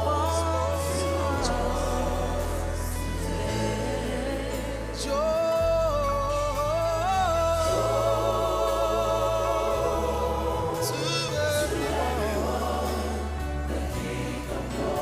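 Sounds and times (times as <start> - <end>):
bass line: 0.0 - 15.0
gospel singing: 0.0 - 15.0.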